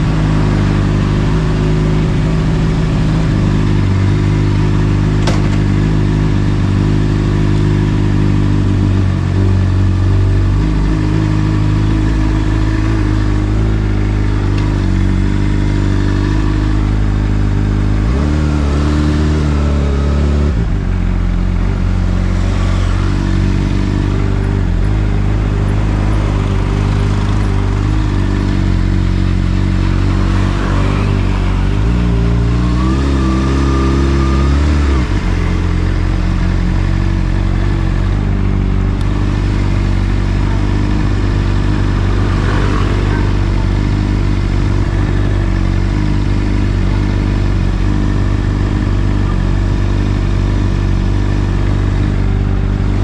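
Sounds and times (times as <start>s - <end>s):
motorcycle engine droning: 0.0s - 53.0s.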